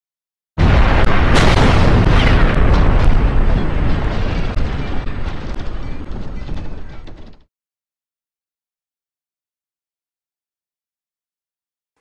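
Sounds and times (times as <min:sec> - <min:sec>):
loud deep boom: 0:00.6 - 0:07.1.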